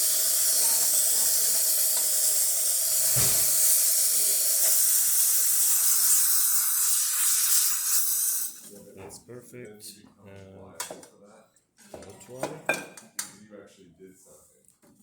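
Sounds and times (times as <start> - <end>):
steam wand hissing: 0.0 - 8.7.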